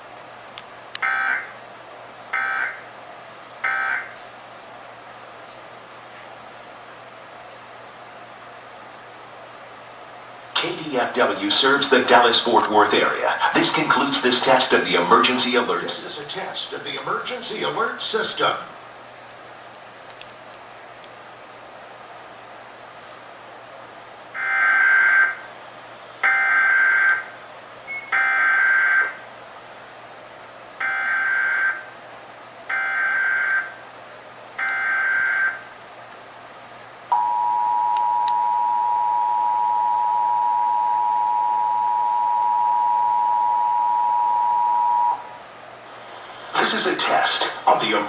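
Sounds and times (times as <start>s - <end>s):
two-tone attention signal: 3.7s - 4.1s, 37.1s - 45.4s.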